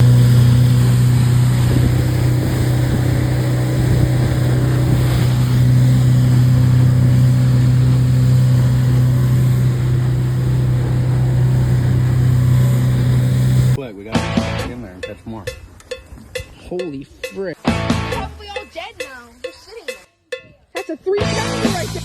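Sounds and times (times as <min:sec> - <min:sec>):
wind on microphone: 0:00.0 - 0:12.0
water rushing past hull: 0:00.0 - 0:13.8
motorboat engine droning: 0:00.0 - 0:15.0.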